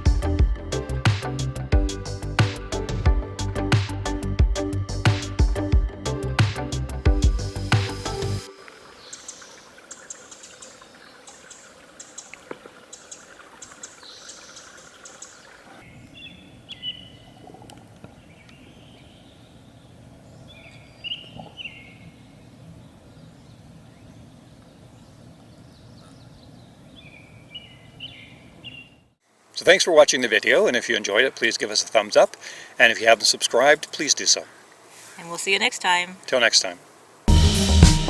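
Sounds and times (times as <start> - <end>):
small birds chirping: 8.1 - 36.5
soft background hush: 29.6 - 37.0.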